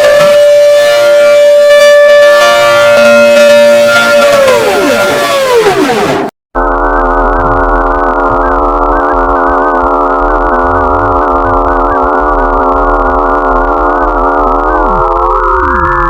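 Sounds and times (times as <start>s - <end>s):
siren with many steady tones: 0.0s - 16.0s.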